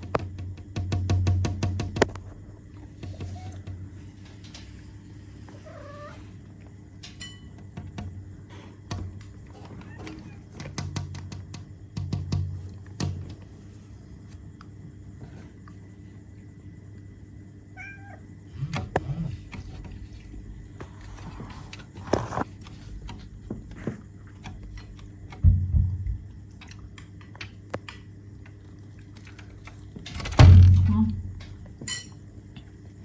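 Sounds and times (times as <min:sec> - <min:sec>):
cat meowing: 0:05.5 - 0:06.4, 0:17.8 - 0:18.3
low thumps: 0:25.4 - 0:26.4, 0:30.2 - 0:31.7.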